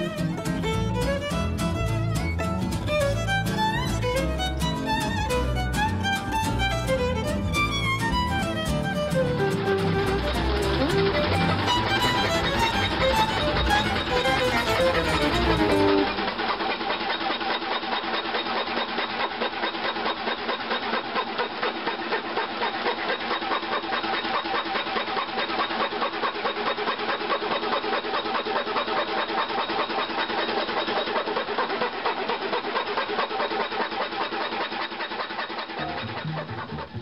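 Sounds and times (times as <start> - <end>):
scroll saw cutting wood: 0.0 - 37.0
drill motor whine: 9.2 - 17.5.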